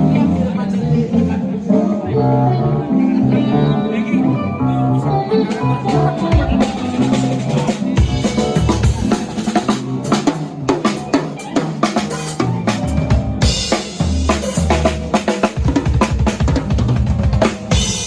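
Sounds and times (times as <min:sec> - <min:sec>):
cymbals: 0:05.9 - 0:18.0.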